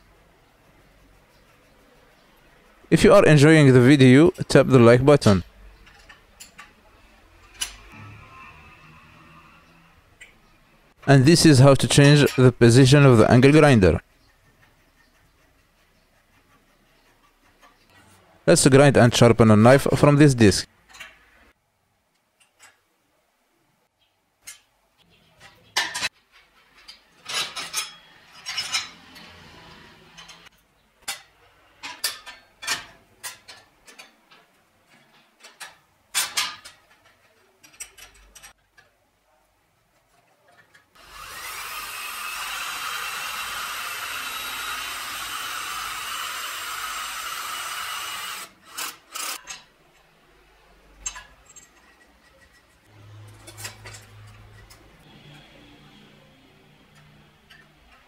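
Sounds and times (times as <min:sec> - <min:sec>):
metallic clicks and knocks: 0:30.2 - 0:39.0
angle grinder running: 0:41.0 - 0:49.4.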